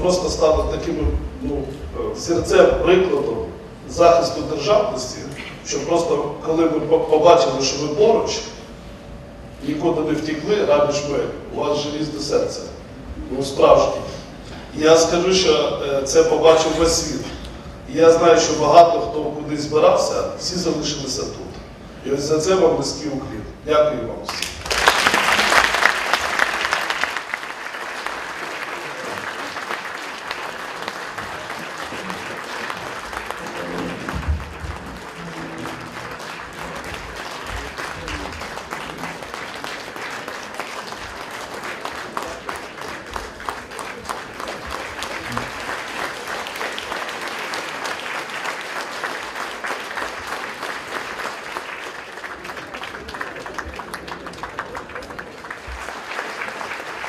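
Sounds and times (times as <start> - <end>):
crowd applauding: 24.3 - 57.0.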